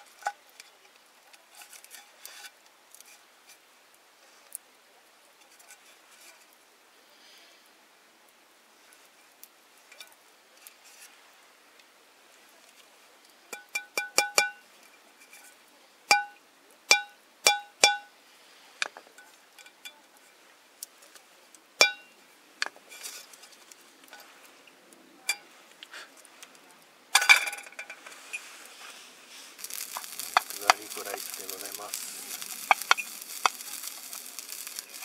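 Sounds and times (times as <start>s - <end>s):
rustling scrape: 1.4s - 3.6s, 10.6s - 11.2s, 22.8s - 24.6s, 27.4s - 35.0s
metal cookware clinking: 27.2s - 28.0s.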